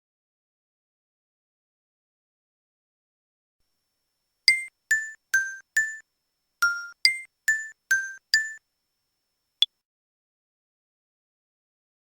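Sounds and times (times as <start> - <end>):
bell-like keyboard melody: 4.5 - 6.0, 6.6 - 8.6.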